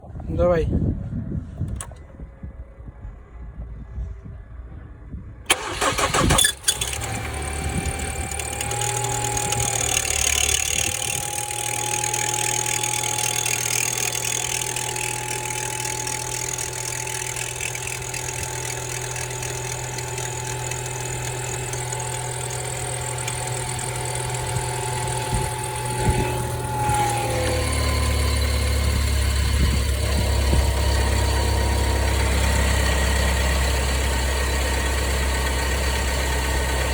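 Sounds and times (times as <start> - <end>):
car engine idling with whine: 0.2 - 36.9
car engine cranking and starting: 5.5 - 36.9.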